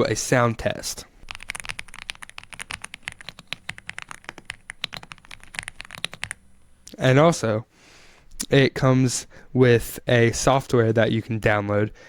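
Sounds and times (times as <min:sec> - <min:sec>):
fast mechanical keyboard typing: 0:01.2 - 0:06.7.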